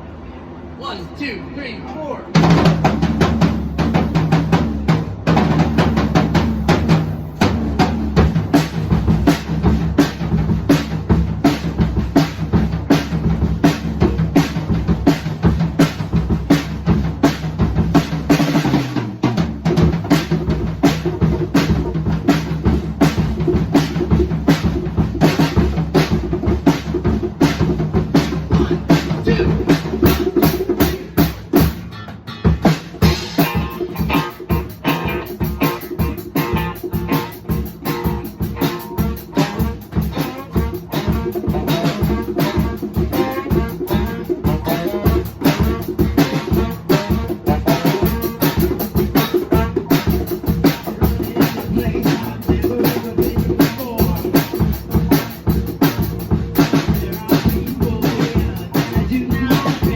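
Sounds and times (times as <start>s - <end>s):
drum kit beat: 2.4s - 59.9s
bass guitar notes: 19.6s - 59.9s.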